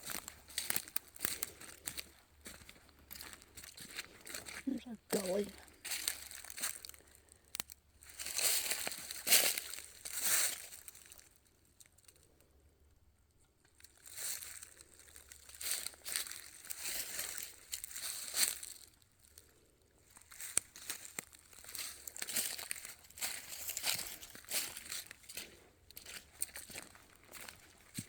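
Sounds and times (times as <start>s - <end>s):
footsteps crunching on gravel: 0.0s - 7.0s, 8.1s - 10.8s, 20.3s - 28.0s.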